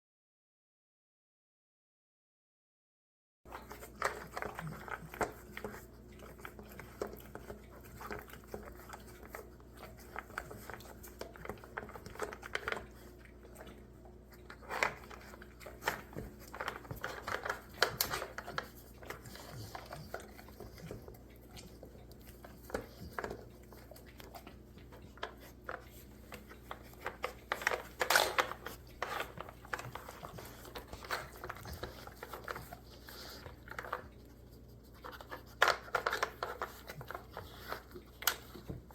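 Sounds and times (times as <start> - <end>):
dog chewing: 3.5 - 38.9.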